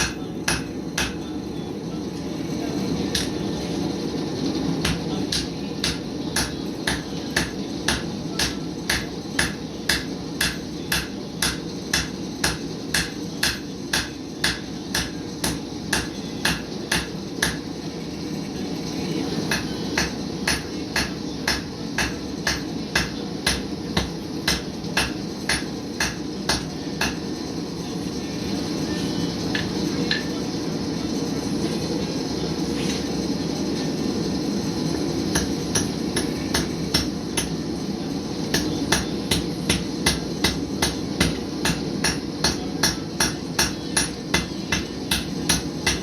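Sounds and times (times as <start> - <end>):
hammer striking metal on anvil: 0.0 - 1.2, 3.1 - 3.4, 4.8 - 17.7, 19.5 - 27.3, 35.3 - 37.6, 38.5 - 46.0.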